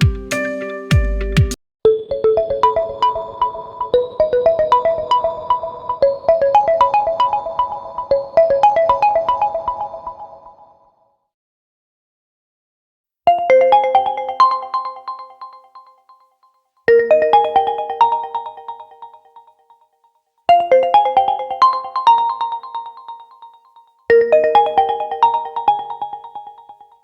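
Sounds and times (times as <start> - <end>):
bright chiming ringtone: 13.3 - 16.1, 16.9 - 19.6, 20.7 - 27.0.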